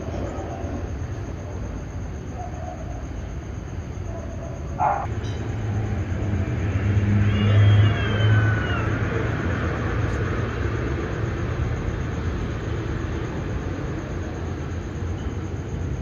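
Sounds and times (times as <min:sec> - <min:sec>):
cat yowling: 0:07.1 - 0:09.3.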